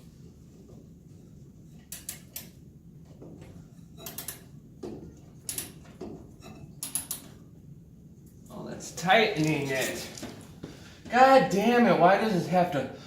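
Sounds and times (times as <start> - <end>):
tool clicking and scraping on metal: 1.7 - 2.6, 3.7 - 4.6, 5.4 - 7.4.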